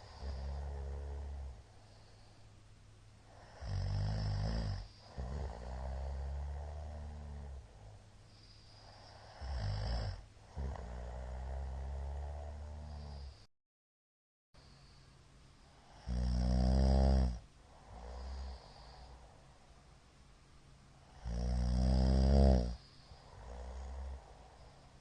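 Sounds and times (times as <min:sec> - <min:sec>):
man snoring loudly: 0:00.0 - 0:01.6, 0:03.3 - 0:07.6, 0:08.8 - 0:13.4, 0:15.9 - 0:19.1, 0:21.1 - 0:24.3.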